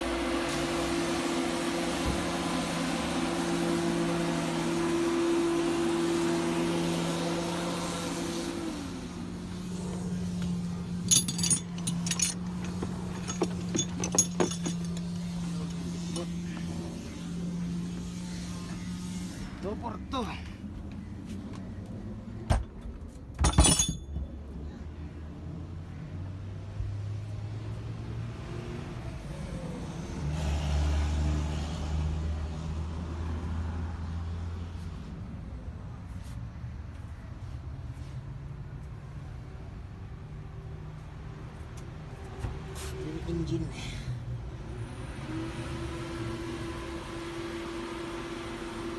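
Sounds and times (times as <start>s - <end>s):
boat engine humming: 10.7s - 18.1s
metallic clicks and rattles: 11.1s - 16.3s, 23.4s - 24.3s.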